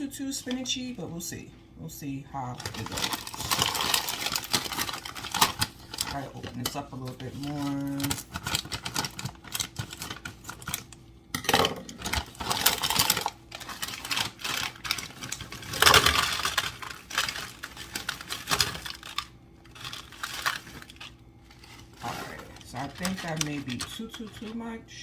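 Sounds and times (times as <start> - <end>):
plastic bag crinkling: 2.4 - 25.0.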